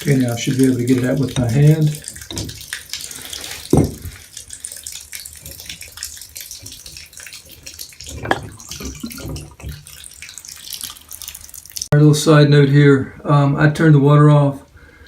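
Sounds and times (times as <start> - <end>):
water running and splashing: 0.0 - 12.0.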